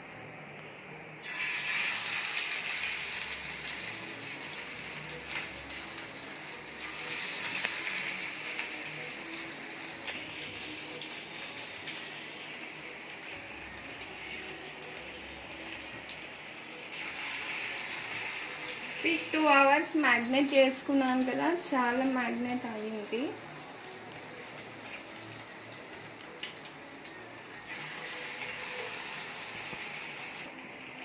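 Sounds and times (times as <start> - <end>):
oil sizzling in a frying pan: 1.2 - 31.0.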